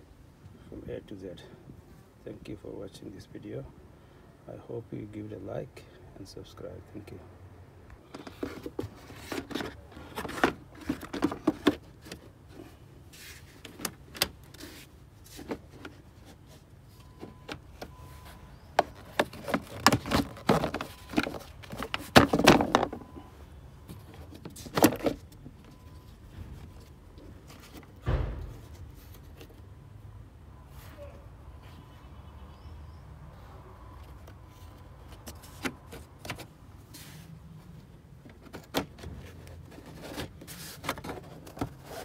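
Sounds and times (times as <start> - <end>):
parts and tools clicking and rattling: 8.0 - 12.7, 18.7 - 23.2
dull thump: 28.0 - 28.8.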